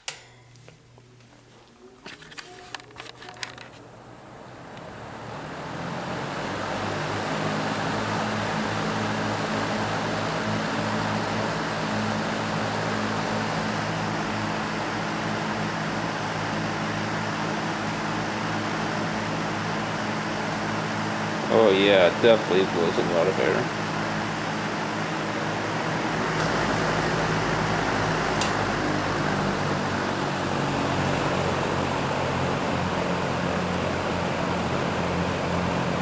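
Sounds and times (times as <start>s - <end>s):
fan switch clicks: 0.0s - 0.8s, 28.3s - 28.8s
fan motor hum: 0.0s - 36.0s
box fan blades spinning: 1.9s - 36.0s.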